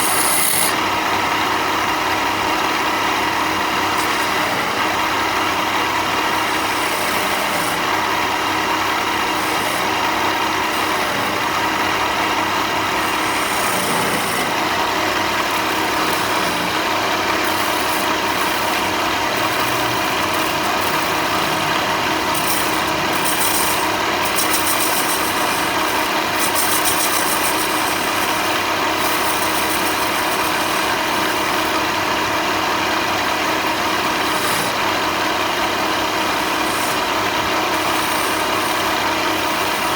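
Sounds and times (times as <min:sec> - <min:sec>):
rasping on wood: 0:00.0 - 0:00.8, 0:12.9 - 0:31.9, 0:34.0 - 0:34.9, 0:36.1 - 0:39.9
power tool motor running: 0:00.0 - 0:39.9.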